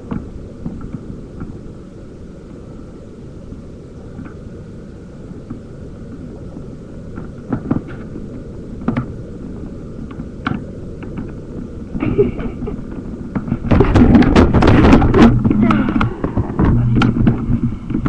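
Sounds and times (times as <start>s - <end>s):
knocking and rubbing on microphone: 13.3s - 18.0s.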